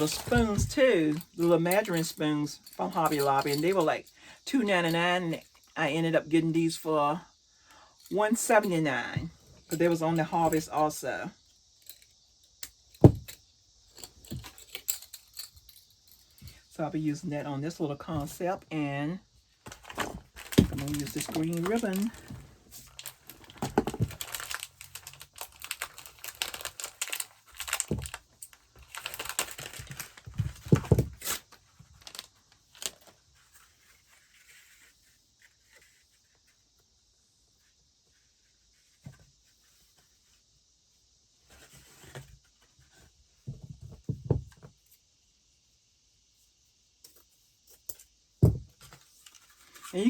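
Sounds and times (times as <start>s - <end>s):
ribbon rustling and crinkling: 19.6s - 36.1s.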